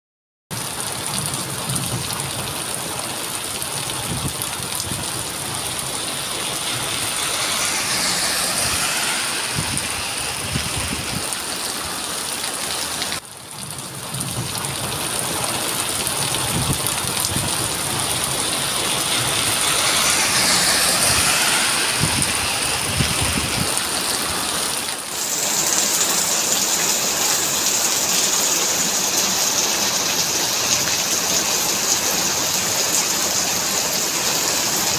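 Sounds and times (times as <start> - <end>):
heavy rain on hard surfaces: 0.5 - 34.9.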